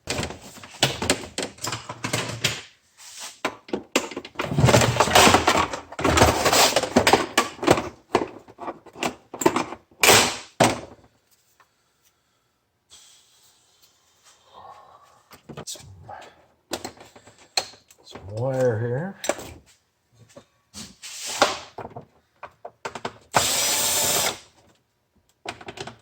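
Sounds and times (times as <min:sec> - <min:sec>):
plastic casing knocking and clattering: 0:00.0 - 0:02.7, 0:03.6 - 0:10.0, 0:25.4 - 0:26.0.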